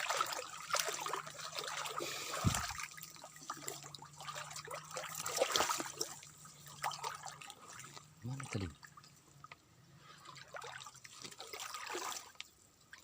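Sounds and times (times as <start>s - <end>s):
stream trickling and splashing: 0.0s - 13.0s
dull thump: 2.4s - 2.8s.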